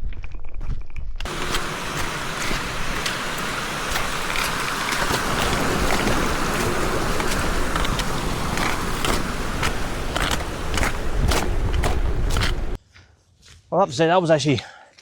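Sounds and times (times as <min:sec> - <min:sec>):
strong wind buffeting microphone: 0:01.2 - 0:12.8.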